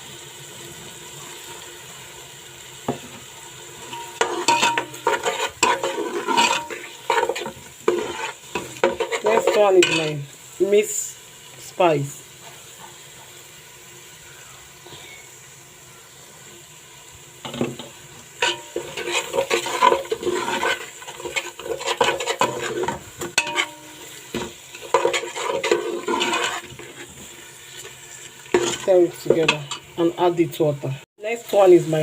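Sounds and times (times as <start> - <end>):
spoon scraping a pot: 3.8 - 10.2, 17.5 - 30.0.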